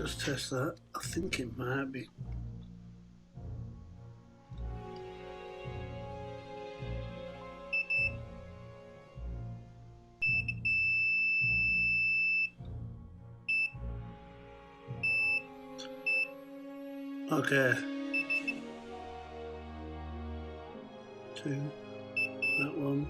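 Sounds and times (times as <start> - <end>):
background music: 0.0 - 23.0
continuity tester beeping: 7.8 - 8.2, 10.2 - 12.6, 13.5 - 13.8, 15.0 - 15.5, 18.2 - 18.6, 22.2 - 22.8.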